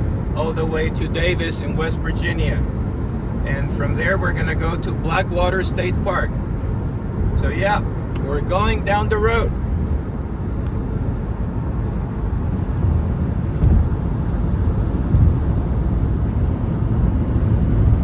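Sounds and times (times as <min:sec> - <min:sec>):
car road rumble from inside: 0:00.0 - 0:18.0
low bumps: 0:05.4 - 0:10.3, 0:12.4 - 0:16.0.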